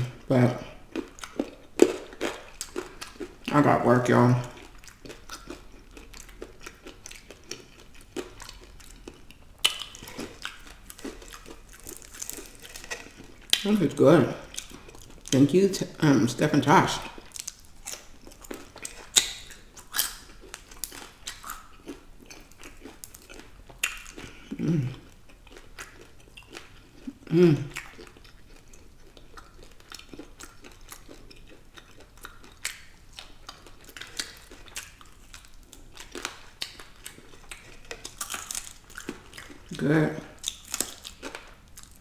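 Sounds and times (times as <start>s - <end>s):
chewing and biting food: 0.0s - 42.0s
low vocal sounds: 24.5s - 25.0s, 27.3s - 27.8s.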